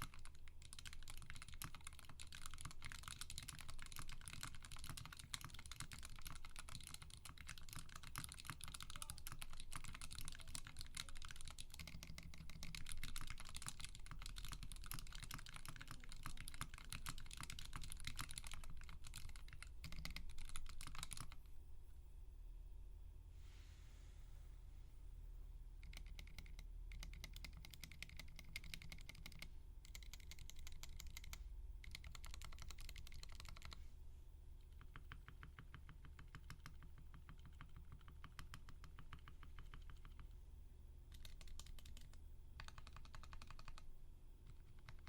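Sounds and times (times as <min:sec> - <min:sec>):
mechanical keyboard typing: 0:00.0 - 0:21.5, 0:25.8 - 0:33.8, 0:34.7 - 0:40.3, 0:41.1 - 0:45.0.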